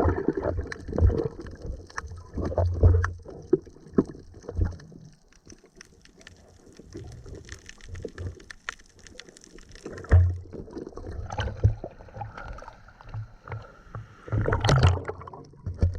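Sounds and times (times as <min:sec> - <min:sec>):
water sloshing and gurgling: 0:00.0 - 0:15.9
knocks underwater: 0:09.9 - 0:13.3, 0:14.0 - 0:15.9.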